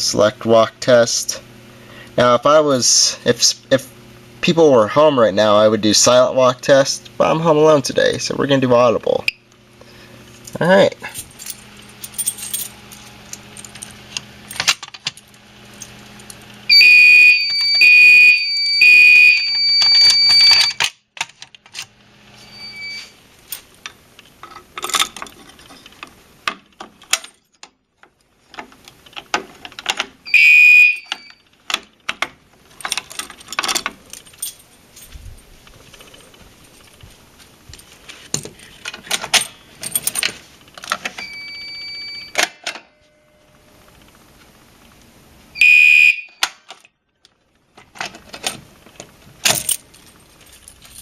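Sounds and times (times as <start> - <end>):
clicks and metallic rattles: 10.4 - 16.5, 23.5 - 30.2, 31.0 - 41.3, 46.4 - 51.0
fire alarm horns blasting: 16.7 - 20.8, 22.4 - 23.2, 30.3 - 31.5, 41.2 - 42.4, 45.6 - 46.5.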